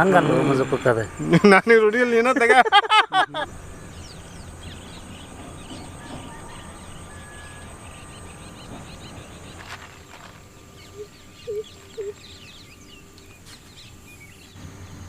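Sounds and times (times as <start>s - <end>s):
low steady rumble: 0.0s - 15.0s
small birds chirping: 3.4s - 15.0s.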